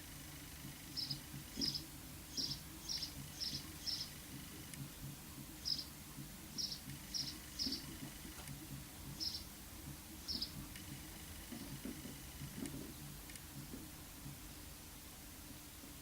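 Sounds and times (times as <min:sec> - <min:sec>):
small bird chirping: 0:00.8 - 0:08.4, 0:09.1 - 0:09.5, 0:10.2 - 0:10.7.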